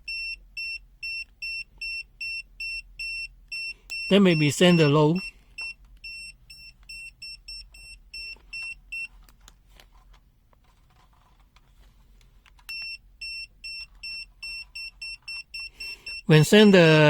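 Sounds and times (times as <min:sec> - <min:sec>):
voltage detector beeping: 0:00.1 - 0:09.1, 0:12.7 - 0:17.0.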